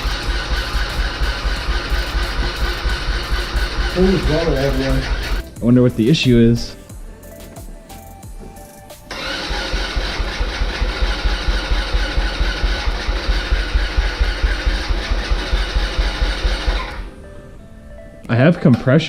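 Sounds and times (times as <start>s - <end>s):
electric starter cranking engine: 0.0s - 5.5s, 9.1s - 17.1s.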